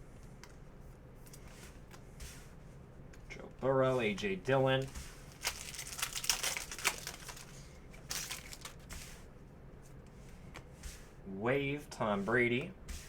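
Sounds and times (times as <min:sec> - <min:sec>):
foil pack crinkling: 0:04.8 - 0:09.0.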